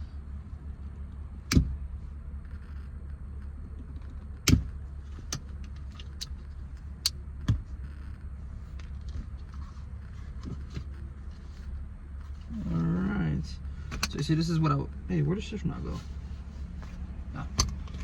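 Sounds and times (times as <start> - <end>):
steady low hum: 0.0 - 18.0
sharp clicks and knocks: 1.4 - 1.8, 2.4 - 11.2, 13.8 - 14.2, 17.4 - 18.0.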